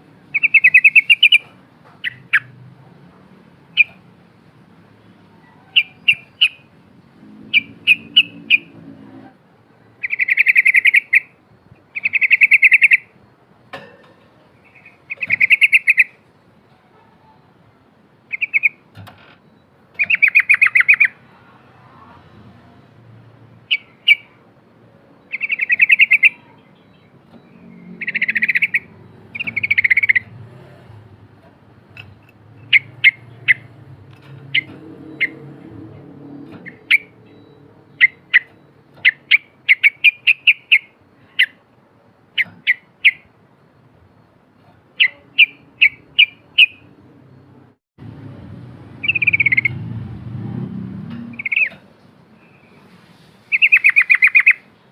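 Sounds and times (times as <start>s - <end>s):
bird singing trills and chirps: 0.2s - 2.6s, 3.7s - 4.0s, 5.0s - 6.7s, 7.4s - 8.8s, 10.0s - 13.2s, 14.5s - 16.3s, 18.3s - 21.4s, 22.3s - 24.4s, 25.1s - 31.0s, 31.9s - 41.6s, 42.2s - 47.6s, 49.0s - 50.0s, 51.2s - 52.8s, 53.5s - 54.8s.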